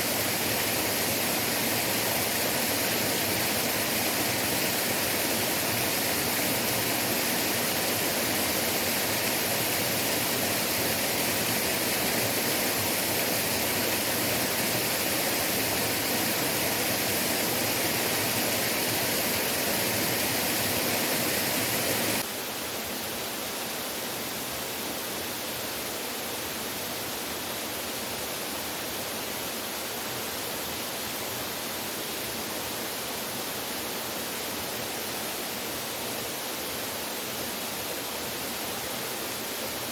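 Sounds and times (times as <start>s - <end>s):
waterfall roaring: 0.0s - 22.2s.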